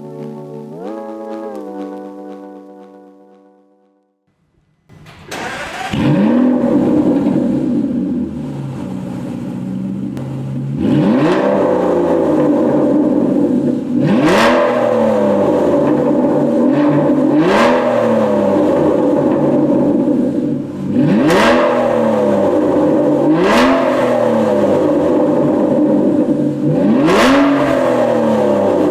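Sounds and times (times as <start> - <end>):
car engine revving: 4.4 - 28.9
car engine idling: 4.5 - 28.9
car engine cranking: 4.9 - 28.9.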